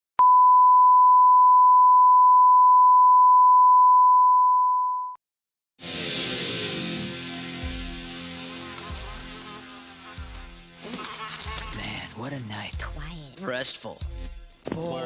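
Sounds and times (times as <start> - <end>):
steady pure test tone beep: 0.2 - 5.2
music: 5.8 - 15.0.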